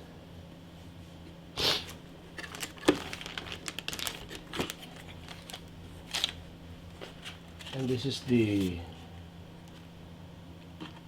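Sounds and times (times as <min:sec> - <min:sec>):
packaging rustle: 0:02.3 - 0:06.4.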